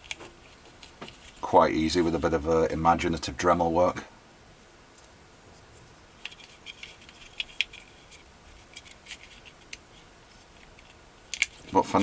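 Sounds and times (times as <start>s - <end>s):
light scraping of small parts: 0.0s - 2.4s, 5.0s - 12.0s
small clicks of parts: 10.6s - 11.7s.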